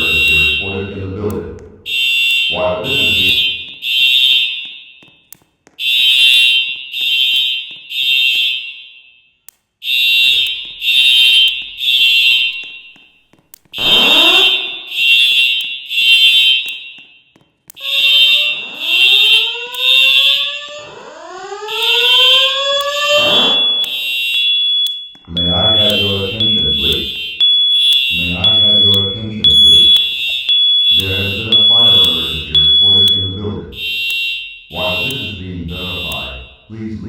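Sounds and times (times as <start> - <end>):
fire alarm horn beeps: 0.0 - 1.1, 1.8 - 36.8
rising whooping alarm sweeps: 0.0 - 3.8, 13.8 - 15.6, 17.7 - 36.7.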